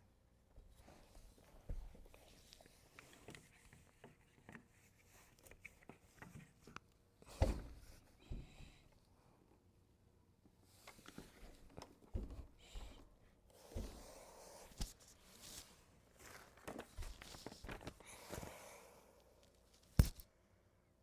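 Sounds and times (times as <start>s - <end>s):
faint knocks and thuds: 7.3s - 8.8s, 12.0s - 13.1s
packaging rustling: 14.8s - 18.4s.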